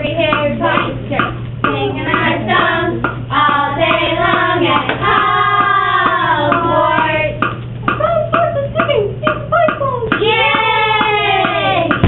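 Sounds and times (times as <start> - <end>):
children singing together: 1.7 - 7.3.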